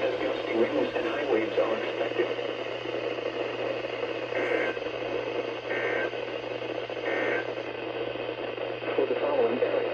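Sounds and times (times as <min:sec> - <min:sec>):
radio static and hum: 0:00.0 - 0:09.9
digital data bursts: 0:04.3 - 0:04.8.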